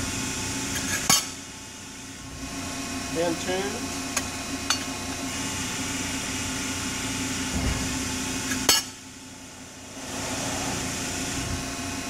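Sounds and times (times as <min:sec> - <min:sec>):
sharp metallic clank: 0:00.8 - 0:01.4, 0:08.5 - 0:09.0
low hydraulic surge: 0:09.8 - 0:11.9.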